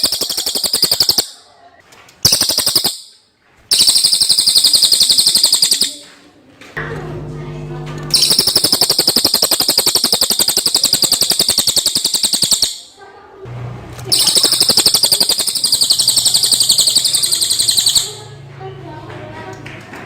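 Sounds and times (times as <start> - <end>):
bird singing high trill: 0.0 - 1.4, 2.2 - 6.0, 8.1 - 13.0, 14.1 - 18.4.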